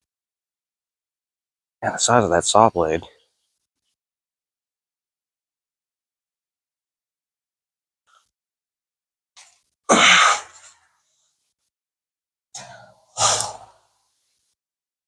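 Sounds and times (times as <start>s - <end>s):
person sneezing: 9.9s - 10.7s, 13.2s - 13.6s.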